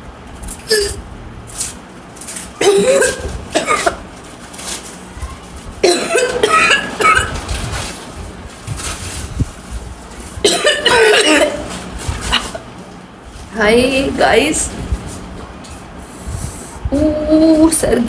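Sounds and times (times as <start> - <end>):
woman coughing: 0.7 - 1.0, 2.6 - 4.0, 5.8 - 7.4, 10.4 - 11.7.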